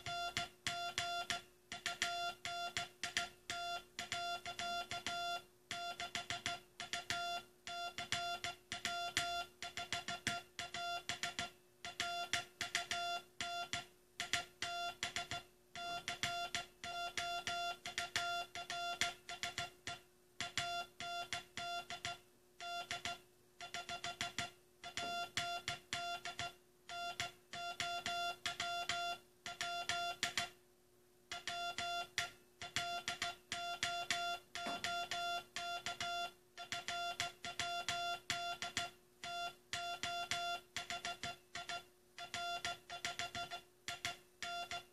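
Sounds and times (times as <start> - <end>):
faint steady hum: 0.0 - 44.9
morse code beeping: 31.3 - 44.9.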